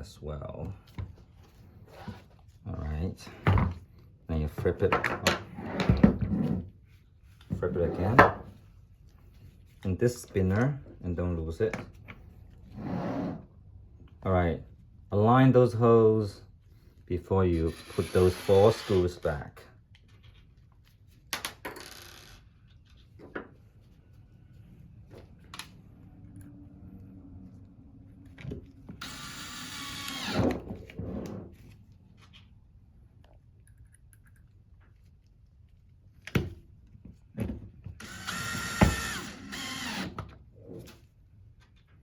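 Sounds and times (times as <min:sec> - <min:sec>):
power screwdriver whining: 0:17.7 - 0:19.1, 0:29.0 - 0:30.7, 0:38.0 - 0:40.2.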